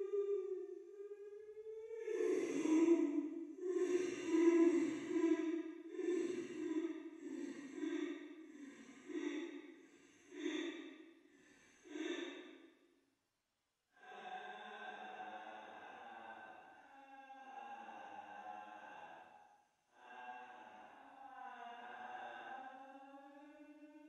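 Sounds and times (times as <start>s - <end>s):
woman sobbing: 0.0s - 8.0s.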